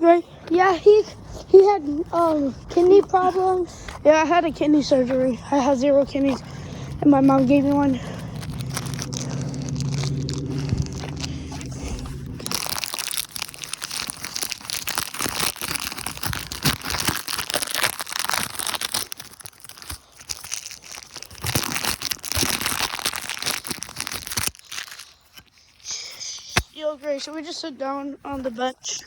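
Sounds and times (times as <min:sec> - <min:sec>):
crackly crinkling and rustling: 0:00.0 - 0:29.0
low hum: 0:01.1 - 0:17.5.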